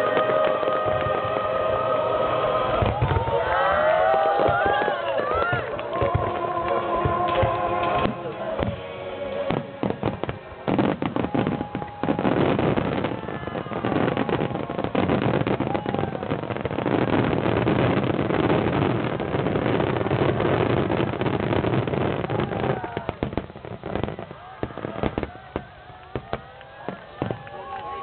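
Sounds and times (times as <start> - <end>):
fireworks bangs: 0.0 - 28.0.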